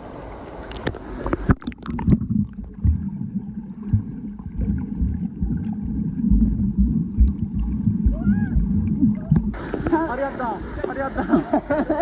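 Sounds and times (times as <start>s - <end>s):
muffled underwater stream rumble: 0.0s - 12.0s
underwater thumps and bumps: 1.2s - 10.1s.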